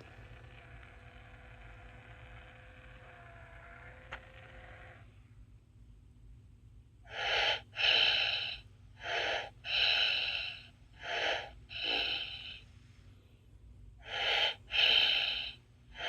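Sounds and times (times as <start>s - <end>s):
toy doll snoring: 0.0s - 5.1s, 7.1s - 12.6s, 14.0s - 16.0s.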